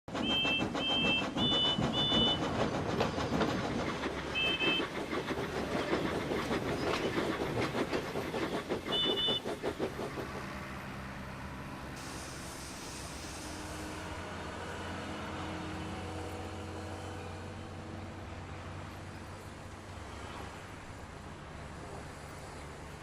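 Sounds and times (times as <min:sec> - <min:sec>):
steam locomotive puffing and rattling: 0:00.1 - 0:15.0
two-tone train whistle toots: 0:00.2 - 0:02.4, 0:04.3 - 0:05.0, 0:08.9 - 0:09.5.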